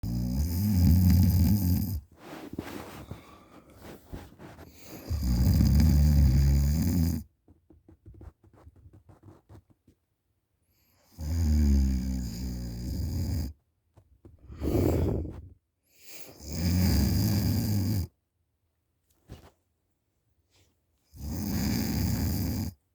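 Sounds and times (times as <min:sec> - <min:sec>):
loud rattling snores: 0:00.0 - 0:02.0, 0:04.8 - 0:07.2, 0:11.2 - 0:13.5, 0:16.3 - 0:18.1, 0:21.2 - 0:22.8
faint crackly breathing: 0:01.8 - 0:06.1, 0:14.3 - 0:16.4.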